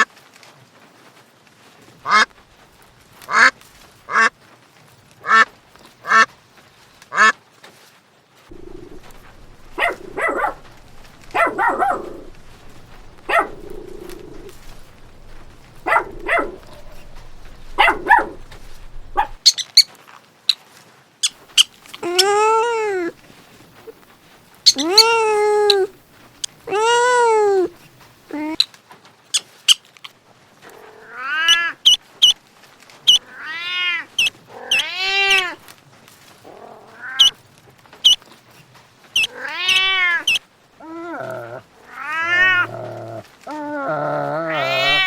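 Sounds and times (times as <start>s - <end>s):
rising and falling animal call: 8.5s - 19.4s, 21.6s - 28.6s, 33.1s - 35.6s, 36.8s - 37.4s, 39.2s - 45.0s
short sharp animal calls: 8.5s - 19.8s, 21.2s - 28.6s, 37.0s - 37.4s, 39.2s - 40.4s, 44.5s - 45.0s.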